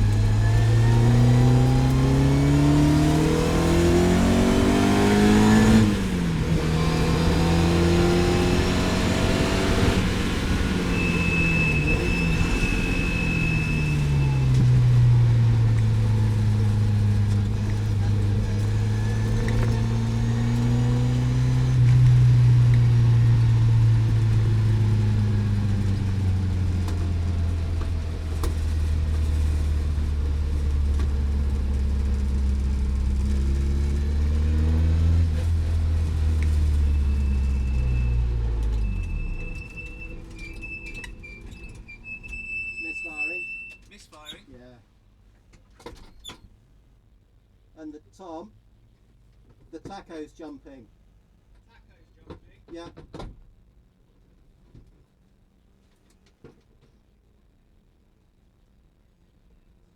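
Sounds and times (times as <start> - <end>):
car engine revving: 0.0 - 42.4.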